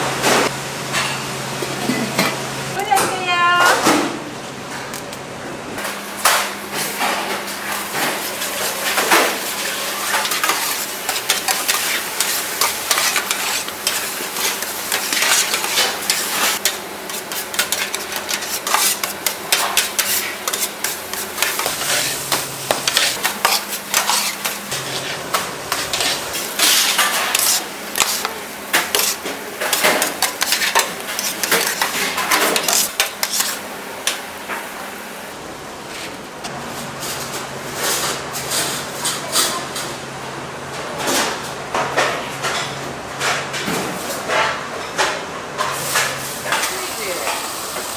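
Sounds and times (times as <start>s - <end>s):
food sizzling in a pan: 5.8s - 22.3s, 22.9s - 24.8s, 26.3s - 35.4s, 46.6s - 47.9s
paddle scraping and knocking pan: 10.0s - 22.1s, 22.8s - 24.7s, 25.9s - 34.2s.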